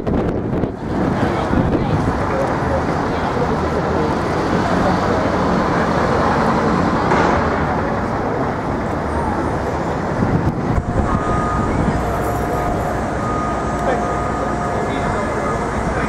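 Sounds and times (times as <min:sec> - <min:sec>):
passing vehicles: 0:00.0 - 0:16.0
steady high whine: 0:08.0 - 0:16.0.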